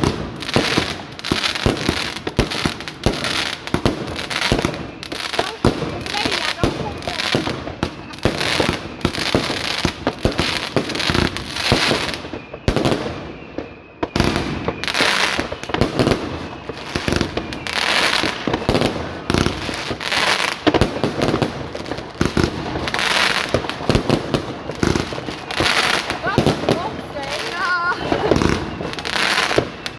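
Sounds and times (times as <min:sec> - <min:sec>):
firework cake bursts and crackling: 0:00.0 - 0:29.9.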